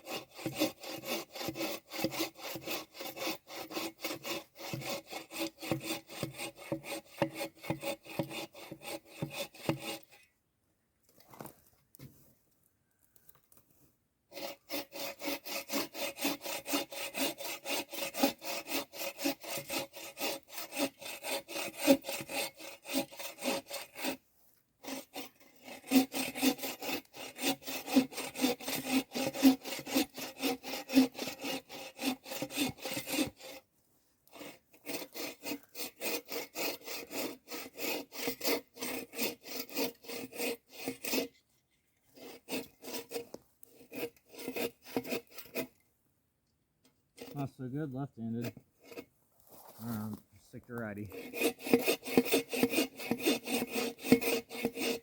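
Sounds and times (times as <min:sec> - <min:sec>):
saw rasping through log: 0:00.0 - 0:10.3, 0:14.3 - 0:41.4, 0:42.0 - 0:45.8, 0:47.2 - 0:49.1, 0:50.0 - 0:55.0.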